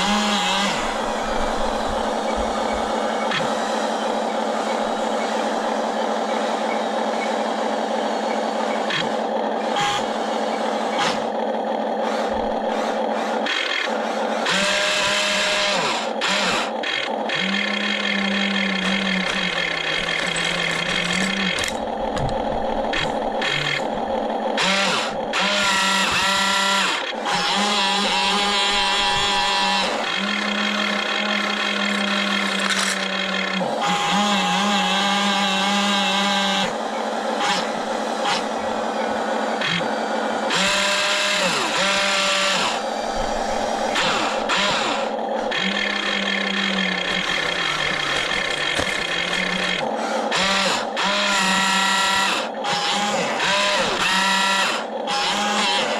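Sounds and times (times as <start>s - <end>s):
toy excavator motors whining: 0.0s - 55.9s
clicks and clatter: 18.9s - 23.9s, 31.8s - 33.5s, 45.6s - 49.8s.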